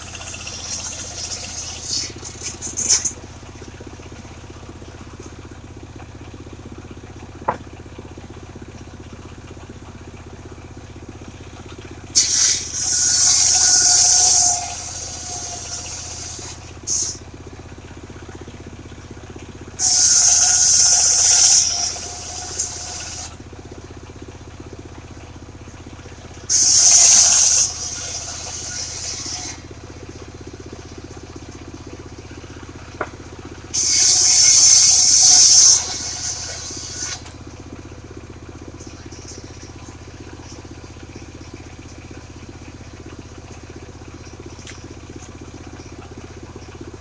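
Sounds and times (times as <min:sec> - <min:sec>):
engine drone: 0:00.0 - 0:47.0
saw blade ripping through wood: 0:12.2 - 0:17.2, 0:26.5 - 0:29.6.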